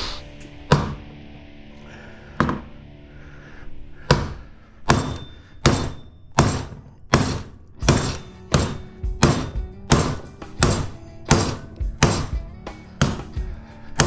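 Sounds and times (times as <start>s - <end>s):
machete chopping copper windings: 4.9s - 12.4s.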